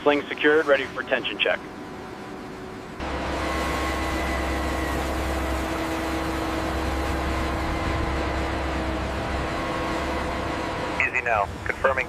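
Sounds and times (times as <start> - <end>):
crane engine rumbling: 0.0 - 12.0.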